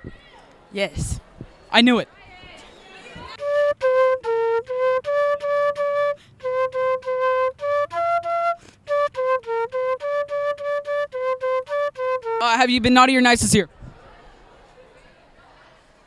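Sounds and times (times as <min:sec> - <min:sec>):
flute-like woodwind melody: 0:02.7 - 0:12.4.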